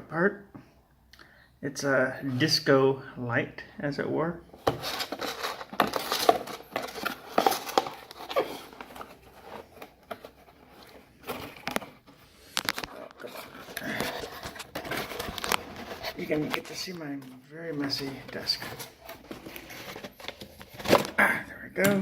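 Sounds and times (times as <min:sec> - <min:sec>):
objects clicking and knocking: 0:04.6 - 0:21.2
rustling: 0:04.6 - 0:21.2.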